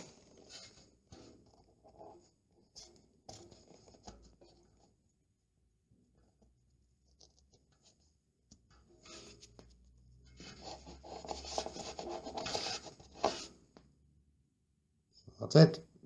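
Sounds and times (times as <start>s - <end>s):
wet paper scratching on wall: 10.3s - 13.6s.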